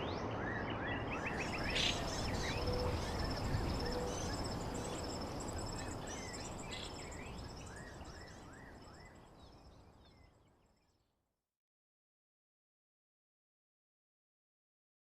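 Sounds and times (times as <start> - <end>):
bird chirping: 0.9 - 10.3
insects trilling: 1.3 - 8.4.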